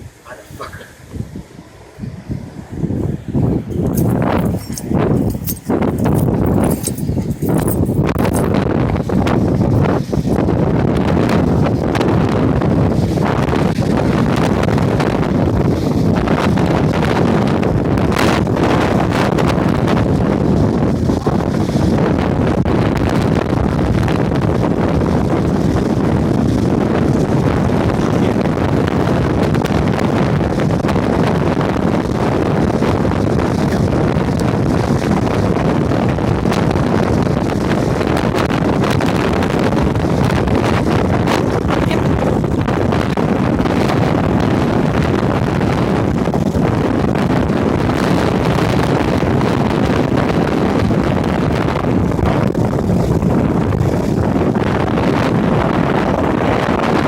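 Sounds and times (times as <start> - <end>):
wind buffeting the microphone: 0.0 - 57.0.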